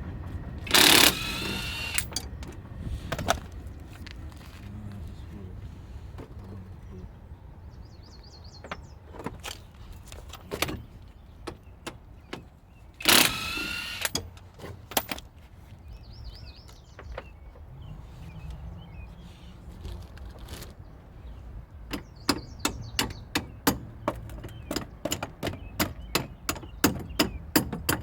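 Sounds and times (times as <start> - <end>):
loud noisy burst: 0.6 - 2.1.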